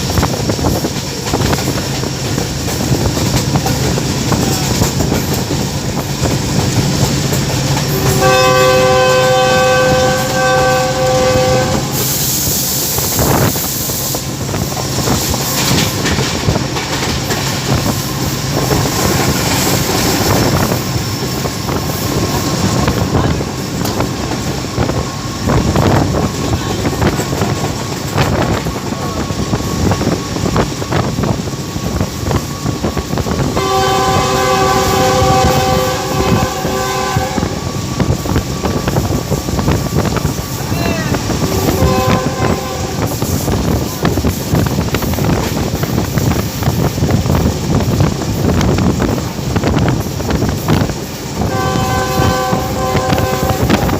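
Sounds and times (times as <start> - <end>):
train wheels clicking over rail joints: 0.0 - 11.1, 11.7 - 53.9
diesel locomotive running: 0.0 - 53.9
multi-tone train horn: 7.8 - 12.3, 33.2 - 38.3, 40.0 - 43.8, 51.4 - 53.9
rush of hiss: 11.8 - 16.1.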